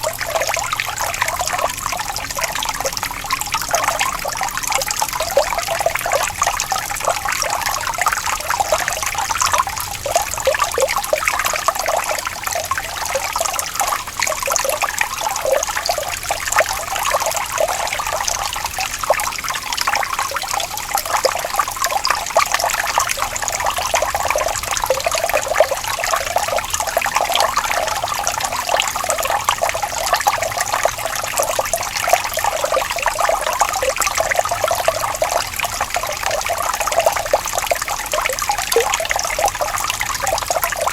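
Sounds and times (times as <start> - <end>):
running water trickling: 0.0 - 40.9.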